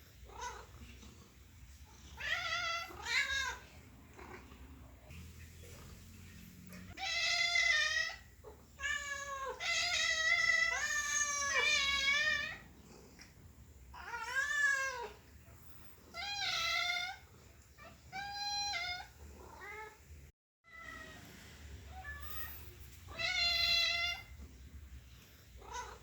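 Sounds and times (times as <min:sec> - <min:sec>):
cat meowing: 0:25.6 - 0:26.0.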